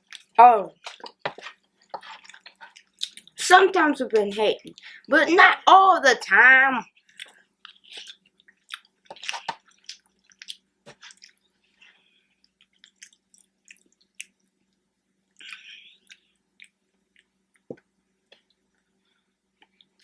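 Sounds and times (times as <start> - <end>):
wet chewing mouth sounds: 0.0 - 3.3, 7.0 - 11.4, 12.4 - 14.5.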